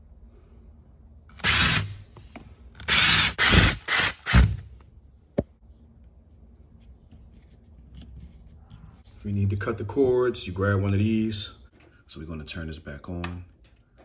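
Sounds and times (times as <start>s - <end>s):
power tool whirring: 1.3s - 2.0s, 2.8s - 4.6s.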